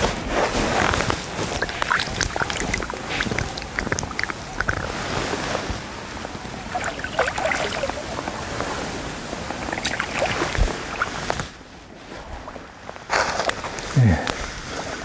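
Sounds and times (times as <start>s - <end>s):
wind on microphone: 0.0s - 12.6s
water splashing: 0.8s - 11.6s
hiss of moving water: 1.1s - 11.6s.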